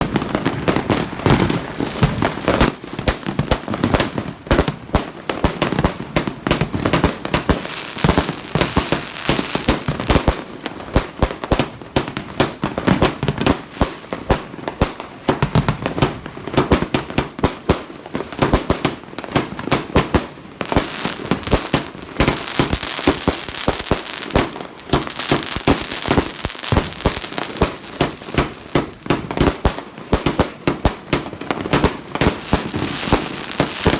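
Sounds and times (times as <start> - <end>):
firework shells bursting with crackle: 0.0 - 14.3, 15.0 - 33.9
firework launch thumps: 24.9 - 27.2.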